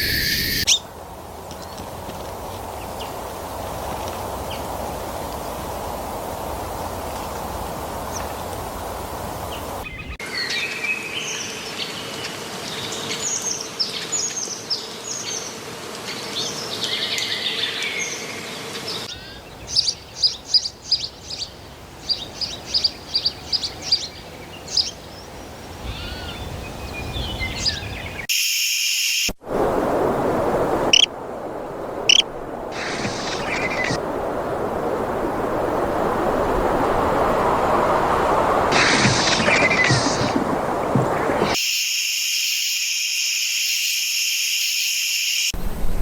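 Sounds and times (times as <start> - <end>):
sharp high bird calls: 0.0 - 0.8, 25.8 - 28.2
birds chirping and trilling: 0.0 - 0.9, 9.3 - 28.3, 32.0 - 34.0, 37.5 - 41.6
background hiss: 19.1 - 39.0.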